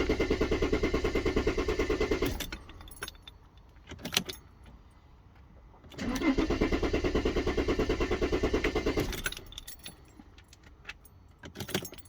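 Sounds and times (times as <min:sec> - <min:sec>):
diesel engine cranking: 0:00.0 - 0:03.2, 0:06.0 - 0:09.8.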